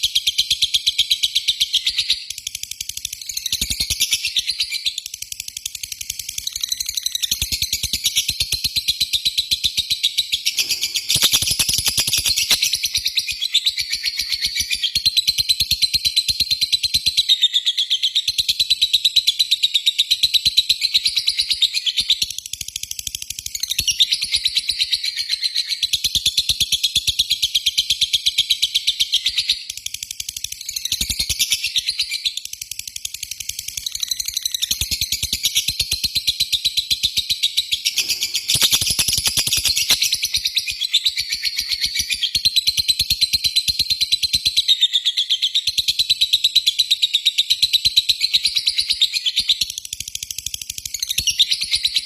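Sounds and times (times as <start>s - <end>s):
lovebird chattering: 10.5s - 12.9s, 37.9s - 40.5s.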